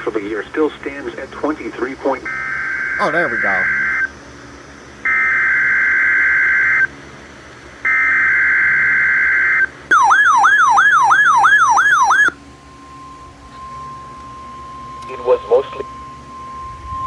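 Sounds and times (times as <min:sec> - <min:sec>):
steady alarm tone: 0:02.3 - 0:04.0, 0:09.9 - 0:17.0.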